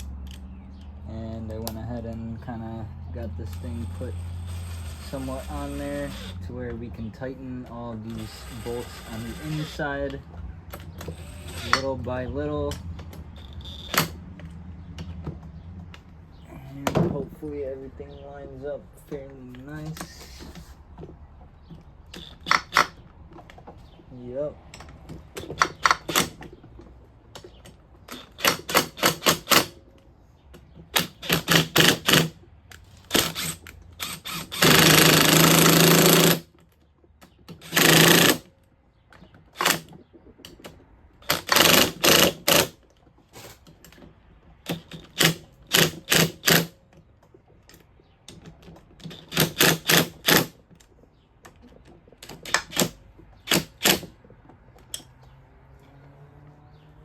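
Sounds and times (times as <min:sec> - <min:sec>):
power driver running: 0:00.0 - 0:14.2, 0:33.0 - 0:36.4, 0:37.6 - 0:38.4.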